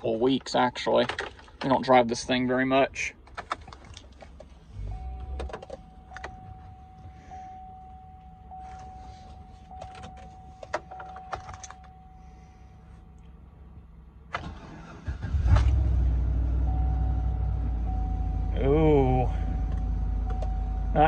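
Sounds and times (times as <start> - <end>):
keys jingling: 8.6 - 12.0.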